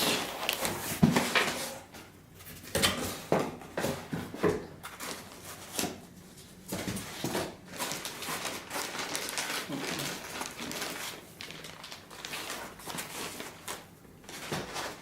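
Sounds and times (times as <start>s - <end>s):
packaging rustling: 6.7s - 15.0s.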